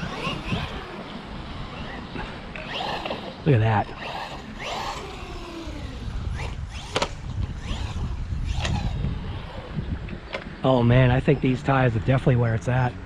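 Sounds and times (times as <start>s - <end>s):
rc car motor whine: 0.0s - 11.7s
low tire rumble: 0.0s - 13.0s
sharp clicks or knocks: 6.8s - 7.5s, 8.5s - 8.9s.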